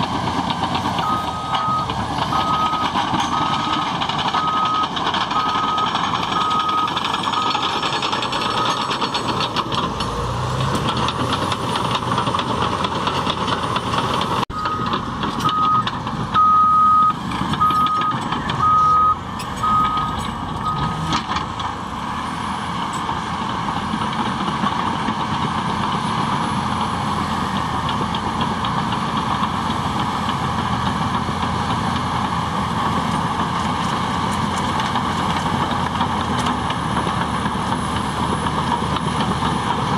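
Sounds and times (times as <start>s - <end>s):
bulldozer diesel engine running: 0.0s - 39.9s
reversing alarm beeping: 1.0s - 7.8s, 8.4s - 9.0s, 14.5s - 21.2s.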